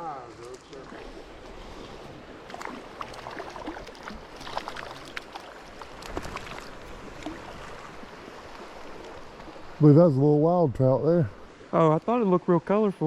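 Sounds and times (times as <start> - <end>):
creek water running: 0.0 - 13.0
small splashes: 0.3 - 9.8.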